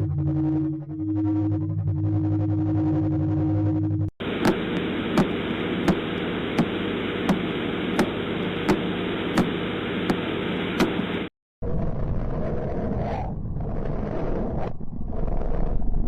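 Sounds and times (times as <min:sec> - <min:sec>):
static hiss: 0:04.2 - 0:11.3
sharp radio clicks: 0:04.4 - 0:11.3.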